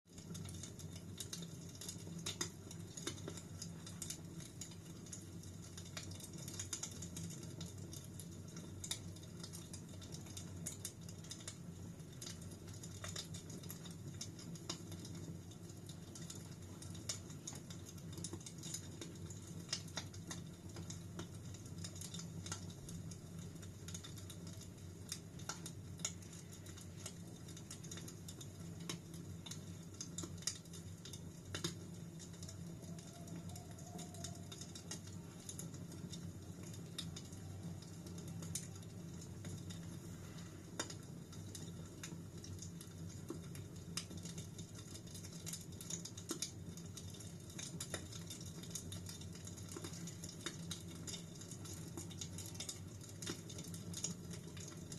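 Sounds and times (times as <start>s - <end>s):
fire crackling and popping: 0.1s - 54.9s.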